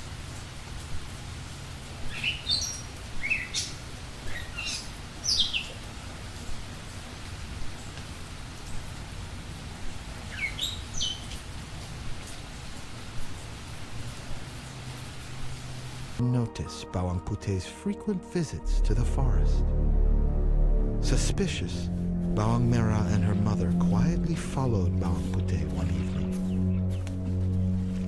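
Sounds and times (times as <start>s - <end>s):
birds chirping: 0.2s - 8.9s, 9.8s - 13.2s, 25.8s - 27.7s.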